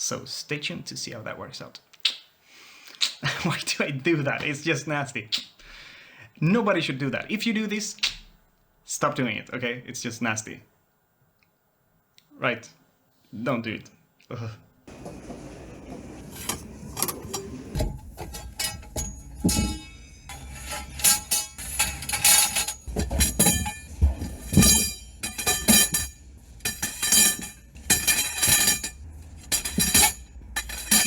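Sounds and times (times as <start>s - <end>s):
metallic clanks and knocks: 14.9s - 31.0s.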